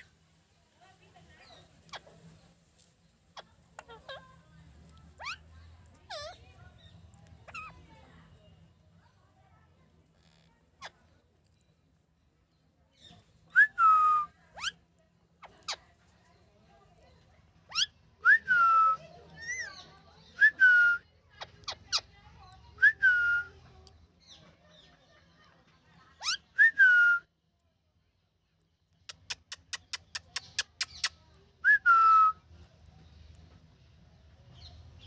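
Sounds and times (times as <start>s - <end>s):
parrot sharp chirps: 5.2s - 5.5s, 6.1s - 7.8s, 14.6s - 14.8s, 17.7s - 18.0s, 29.1s - 31.2s.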